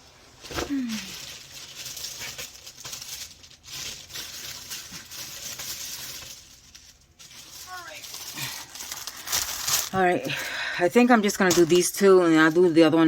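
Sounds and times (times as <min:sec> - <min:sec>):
plastic and paper rustling: 0:00.3 - 0:13.0.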